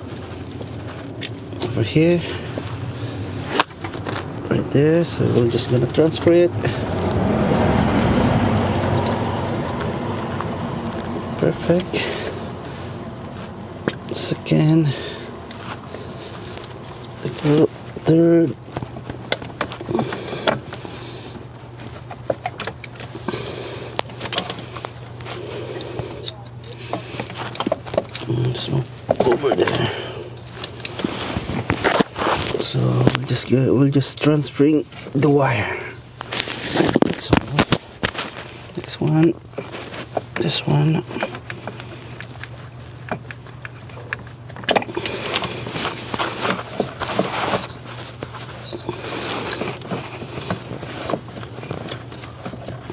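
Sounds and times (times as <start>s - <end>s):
steady low hum: 0.0s - 52.9s
rubber rubbing and scraping: 30.6s - 33.0s, 44.9s - 52.9s.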